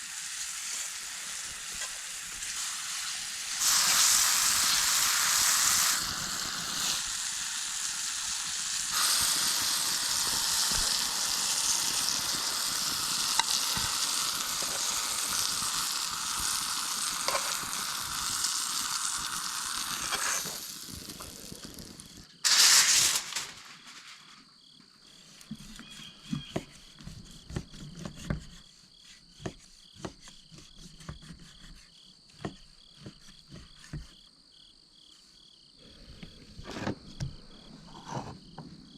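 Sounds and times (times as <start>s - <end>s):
steak sizzling over campfire: 0.0s - 24.3s
crickets chirring: 3.8s - 38.9s
sharp pops: 19.8s - 23.8s.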